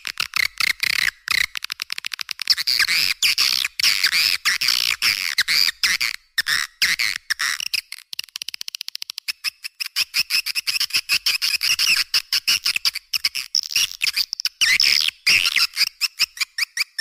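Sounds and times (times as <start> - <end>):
fast run of clicks: 0.0 - 2.6.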